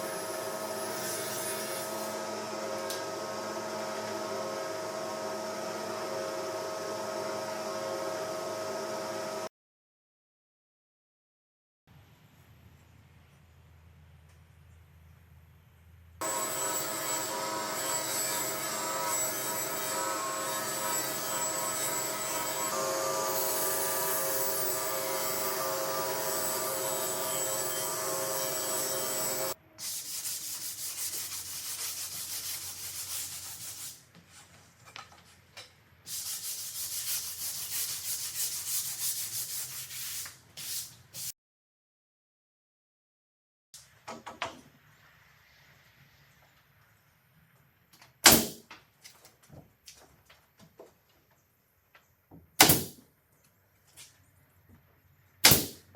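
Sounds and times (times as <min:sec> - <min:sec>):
sander hum: 0:01.9 - 0:09.5, 0:16.2 - 0:29.6
wood being sanded: 0:16.2 - 0:34.0, 0:36.1 - 0:40.2.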